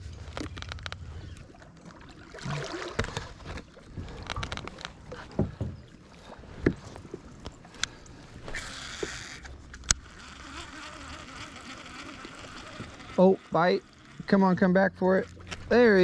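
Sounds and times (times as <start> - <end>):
water splashing against boat hull: 0.2 - 10.1.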